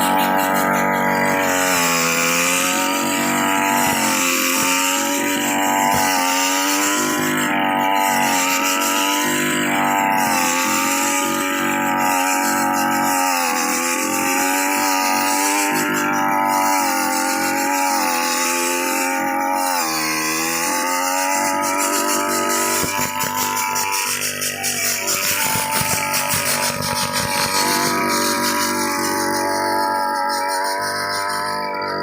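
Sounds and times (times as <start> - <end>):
two-stroke engine high revs: 0.0 - 32.0.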